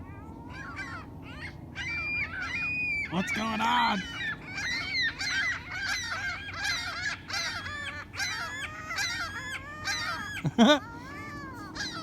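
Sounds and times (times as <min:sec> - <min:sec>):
seagulls squawking: 0:00.0 - 0:12.0.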